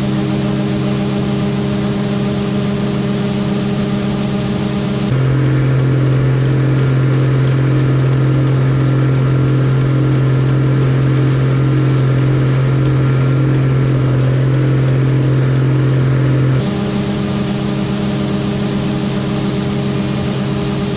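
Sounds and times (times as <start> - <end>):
combine harvester humming: 0.0 - 20.9.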